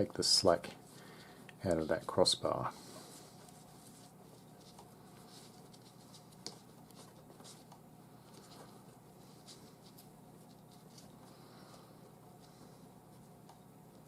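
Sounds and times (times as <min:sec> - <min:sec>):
cord rustling and scratching: 0:03.0 - 0:11.4.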